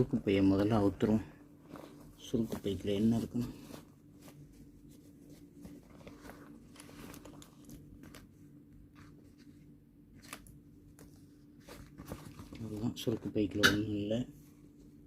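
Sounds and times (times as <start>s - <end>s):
pouch rustling and clicks: 1.6s - 8.3s.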